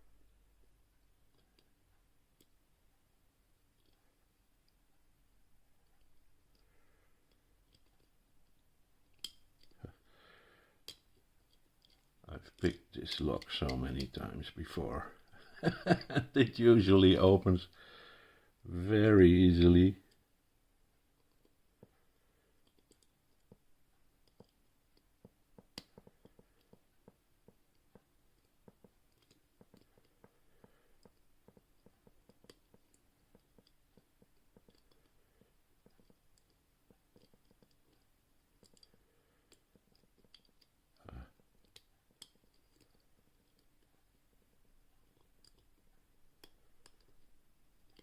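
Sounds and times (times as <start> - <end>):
lock picking clicks and scrapes: 7.3 - 8.2, 10.8 - 14.6, 22.6 - 23.6, 28.4 - 44.0, 45.0 - 48.0.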